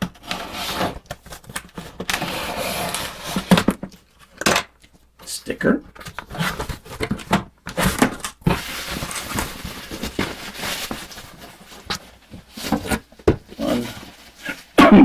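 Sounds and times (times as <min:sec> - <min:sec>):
packing material rustling: 0:06.0 - 0:14.8.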